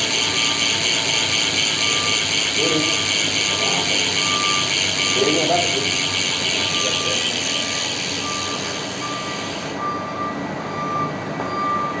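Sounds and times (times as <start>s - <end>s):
bicycle freehub ratchet clicking: 0.0s - 9.8s
repeating beep: 1.8s - 2.4s, 3.6s - 5.8s, 6.5s - 10.2s.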